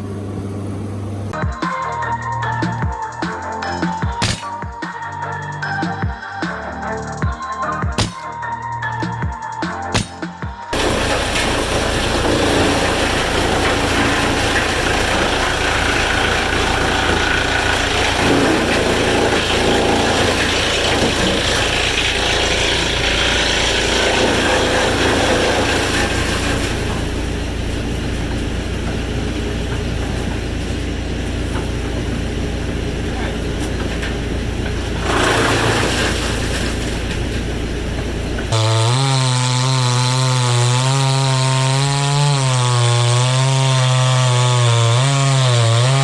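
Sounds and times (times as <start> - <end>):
engine hum: 0.0 - 1.4, 10.8 - 39.2
sawmill machinery running: 0.0 - 1.4, 10.8 - 46.0.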